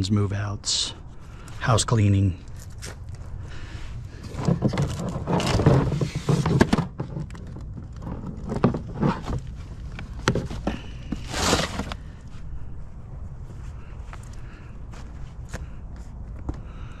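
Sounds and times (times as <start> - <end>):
scraping and rustling of junk: 2.5 - 12.5.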